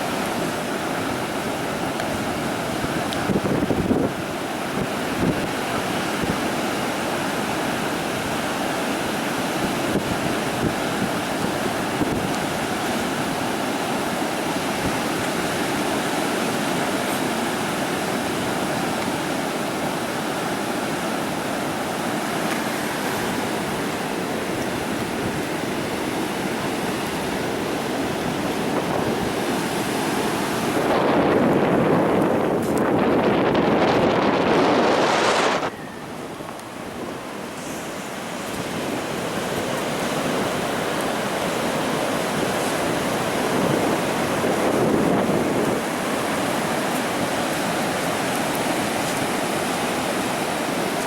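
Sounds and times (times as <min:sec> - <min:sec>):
ocean surf breaking: 0:00.0 - 0:51.0
wind on microphone: 0:01.2 - 0:08.4, 0:22.6 - 0:49.6.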